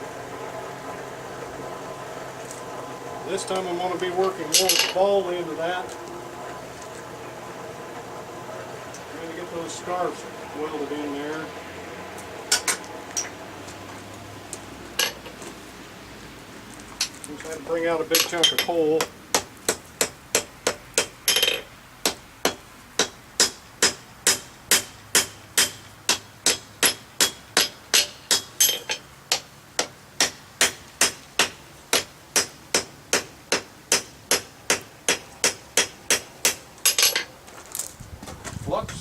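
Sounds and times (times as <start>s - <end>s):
hammer striking steel on anvil: 18.1s - 37.3s.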